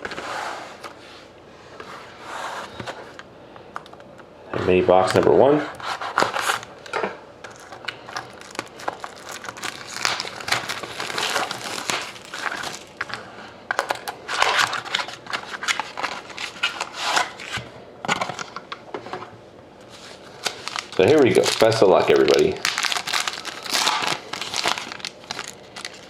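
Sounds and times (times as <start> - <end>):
wrapping crinkling and tearing: 7.5 - 13.2, 19.9 - 26.0.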